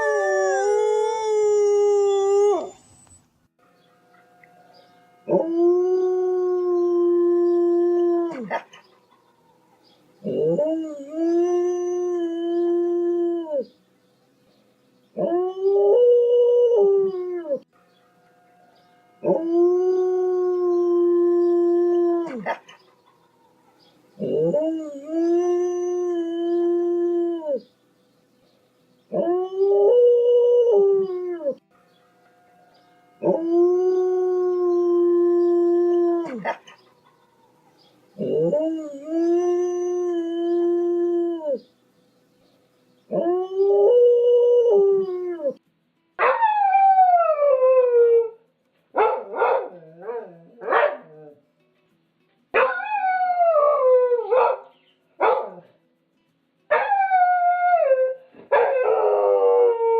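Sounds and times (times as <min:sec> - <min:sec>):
dog howling: 0:00.0 - 0:03.1, 0:05.3 - 0:08.6, 0:10.2 - 0:13.6, 0:19.2 - 0:22.6, 0:24.2 - 0:27.6, 0:33.2 - 0:36.7, 0:38.2 - 0:41.6.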